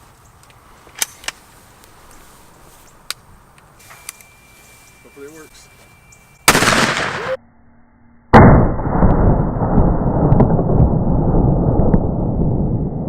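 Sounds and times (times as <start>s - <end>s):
shotgun shot with rumble: 6.5s - 7.4s, 8.4s - 12.5s.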